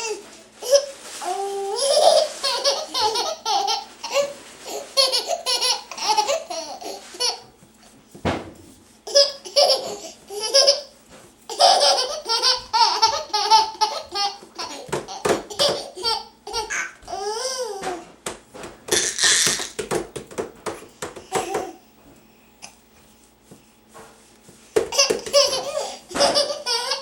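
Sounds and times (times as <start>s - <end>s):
babies laughing: 0.0s - 7.5s, 9.1s - 10.9s, 11.5s - 17.9s, 24.9s - 27.0s.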